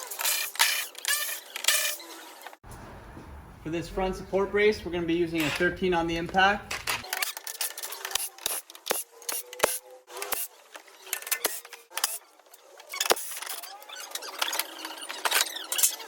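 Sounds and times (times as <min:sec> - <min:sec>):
tools scraping: 0:05.3 - 0:16.0.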